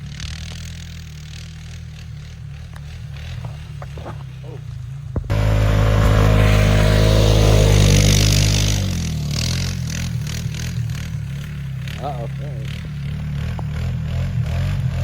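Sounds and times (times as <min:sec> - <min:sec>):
vehicle engine idling and revving: 0:00.0 - 0:15.0
broad rushing hiss: 0:03.6 - 0:11.5.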